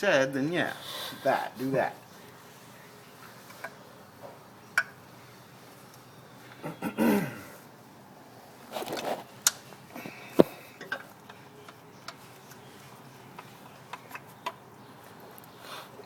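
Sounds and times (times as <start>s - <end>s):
scraping rustle: 8.6s - 9.8s.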